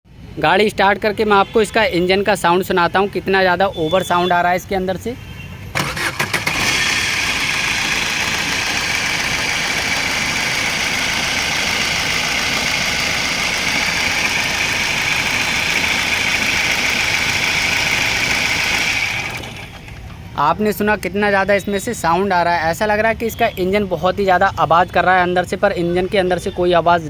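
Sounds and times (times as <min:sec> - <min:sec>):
car engine idling: 0:05.8 - 0:20.3.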